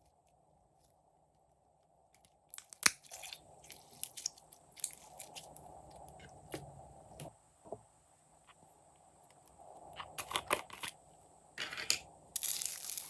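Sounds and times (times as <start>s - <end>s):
wet crackling clicks and pops: 2.2s - 6.3s.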